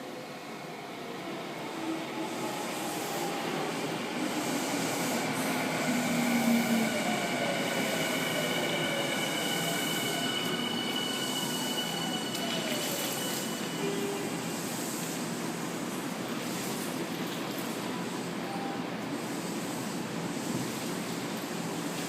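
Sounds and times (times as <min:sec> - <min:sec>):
train wheels rumbling on rail: 0:00.7 - 0:22.0
high squeal: 0:05.6 - 0:14.5.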